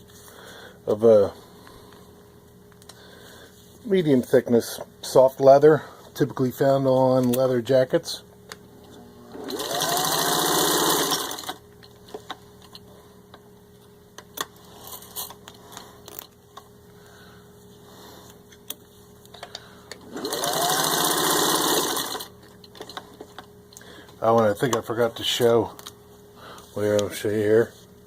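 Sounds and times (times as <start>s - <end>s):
sewing machine stitching: 9.2s - 11.6s, 20.0s - 22.3s.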